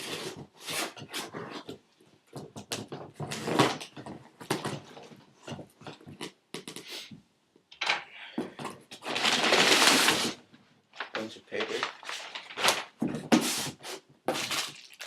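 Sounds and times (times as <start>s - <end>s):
packing paper rustling and crumpling: 9.0s - 15.0s.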